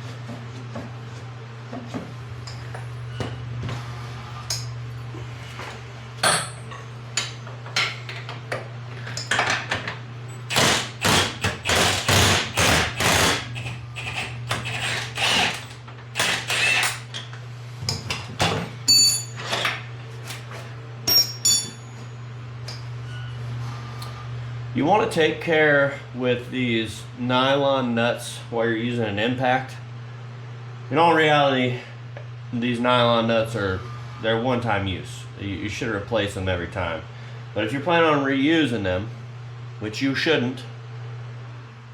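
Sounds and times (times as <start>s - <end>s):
steady low hum: 0.0s - 41.9s
metal-on-metal tool strikes: 21.1s - 22.0s.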